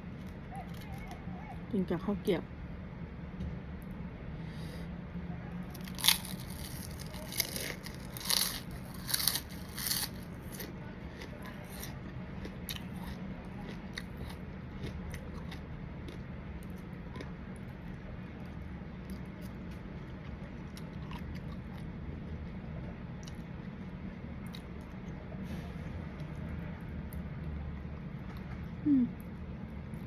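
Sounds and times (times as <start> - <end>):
crunching crispy crackers: 5.6 - 22.4.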